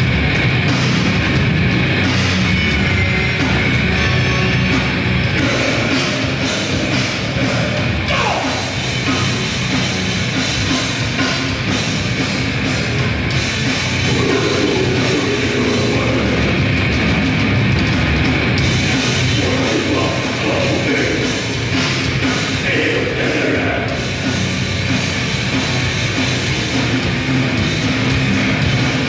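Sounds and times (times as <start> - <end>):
distorted guitar and bass: 0.0 - 29.0
fast drumming: 4.7 - 29.0
harsh shouted vocals: 5.3 - 9.4, 14.0 - 16.7, 19.2 - 24.3.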